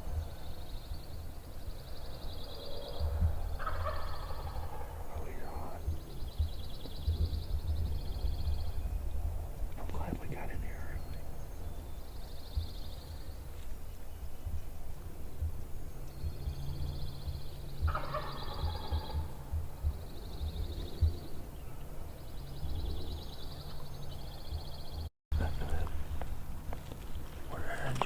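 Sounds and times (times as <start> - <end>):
turkey gobbling: 3.6 - 5.8, 17.9 - 19.4.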